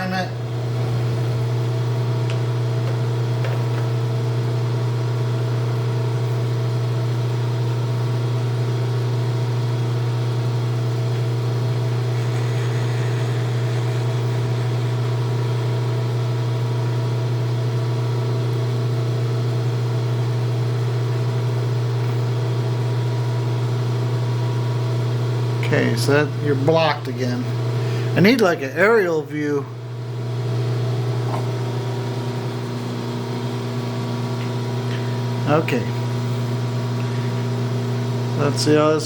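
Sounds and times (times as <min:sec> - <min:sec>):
electric motor humming: 0:09.8 - 0:19.3.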